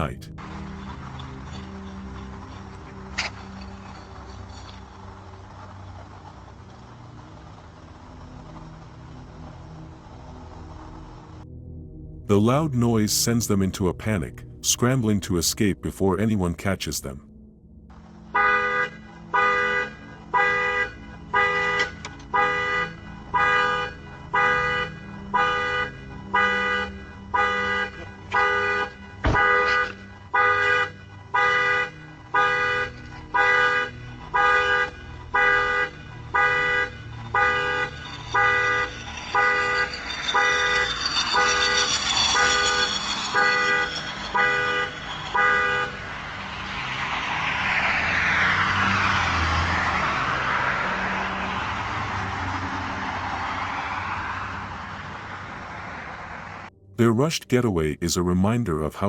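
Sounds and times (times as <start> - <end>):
car horn alarm blasts: 18.4 - 46.0
rushing noise: 35.9 - 57.6.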